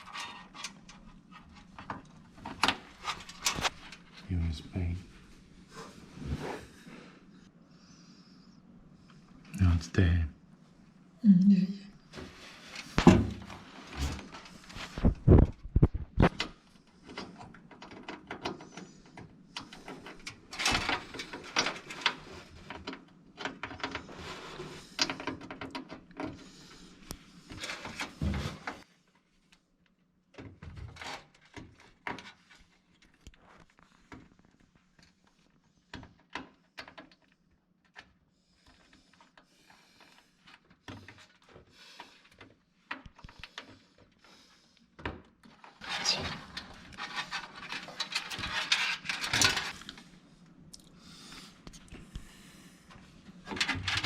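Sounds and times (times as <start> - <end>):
faint steady hum: 0.1 - 30.4.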